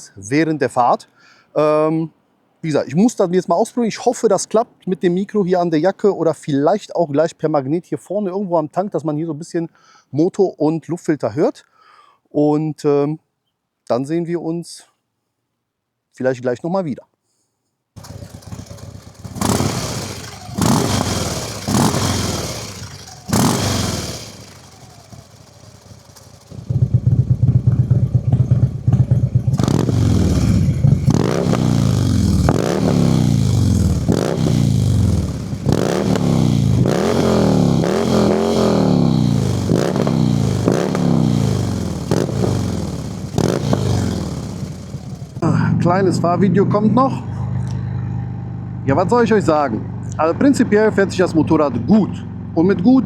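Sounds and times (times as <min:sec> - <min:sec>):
motorcycle engine revving: 0:18.0 - 0:53.0.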